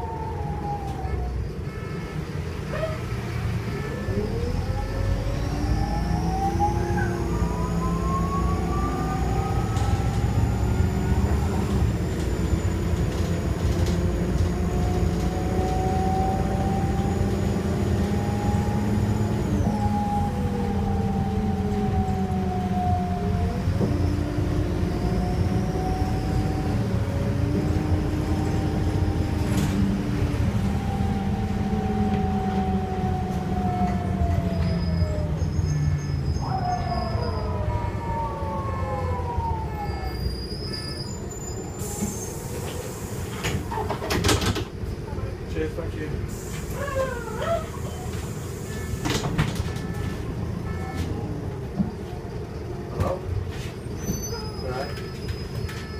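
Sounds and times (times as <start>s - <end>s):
bus diesel engine rumble: 0.0s - 55.9s
whines rising and falling: 14.7s - 35.5s.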